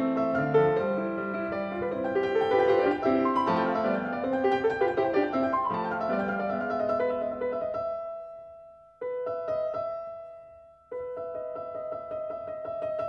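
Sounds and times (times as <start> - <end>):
piano music: 0.0 - 13.0.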